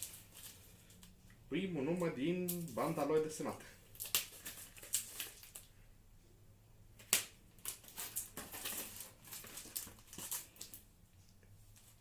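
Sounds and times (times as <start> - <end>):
cardboard and paper rustling: 0.0 - 1.1, 2.5 - 5.7, 7.6 - 10.8.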